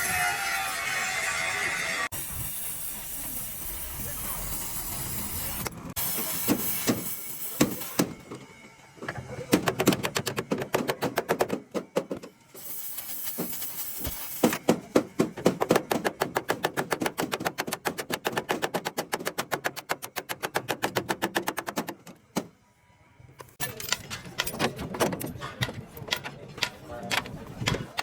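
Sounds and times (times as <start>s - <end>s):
hiss: 2.2s - 8.0s, 12.6s - 14.6s
hammering on metal: 14.4s - 22.5s.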